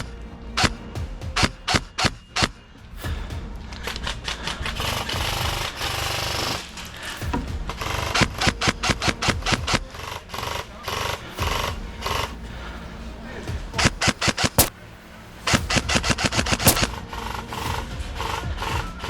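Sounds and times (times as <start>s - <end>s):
airsoft guns firing: 13.8s - 14.8s, 15.6s - 17.1s.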